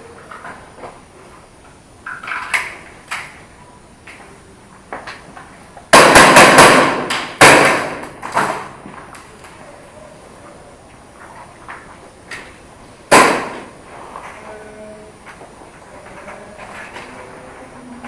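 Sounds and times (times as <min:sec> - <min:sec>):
airsoft guns firing: 0:05.9 - 0:08.7, 0:13.1 - 0:13.8.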